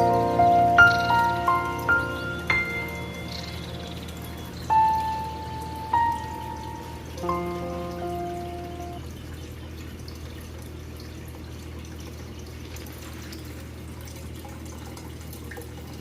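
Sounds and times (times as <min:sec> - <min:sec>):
held musical notes: 0:00.0 - 0:09.1
water dripping and trickling: 0:00.0 - 0:16.0.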